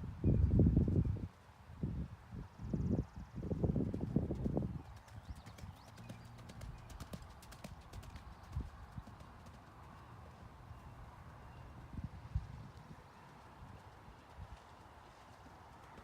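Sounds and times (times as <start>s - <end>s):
horse hooves clip-clopping: 3.8s - 11.3s, 12.7s - 16.0s.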